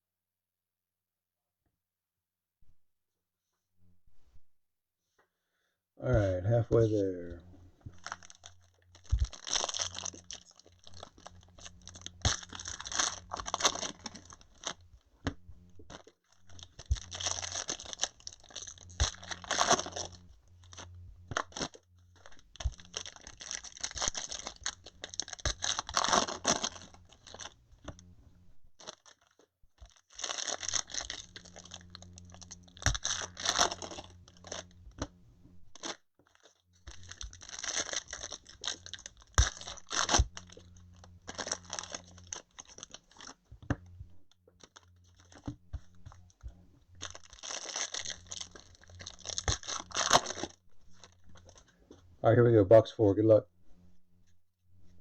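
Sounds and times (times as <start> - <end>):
plastic packaging crinkling and tearing: 7.9 - 14.9, 15.8 - 28.1, 28.8 - 35.0, 35.7 - 43.4, 44.6 - 51.8.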